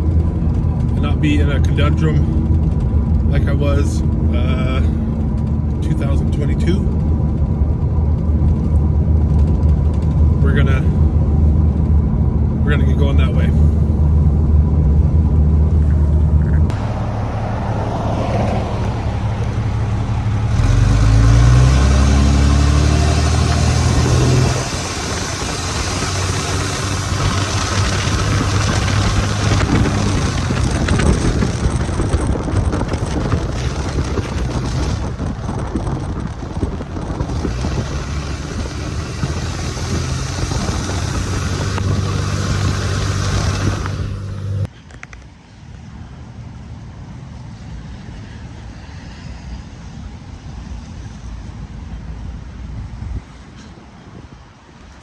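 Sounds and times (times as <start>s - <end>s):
truck engine speeding up: 0.0s - 44.7s
road noise: 0.0s - 55.0s.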